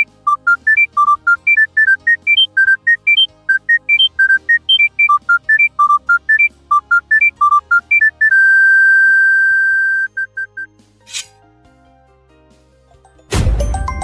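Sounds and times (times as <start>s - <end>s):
phone ringtone beeps: 0.0s - 10.7s.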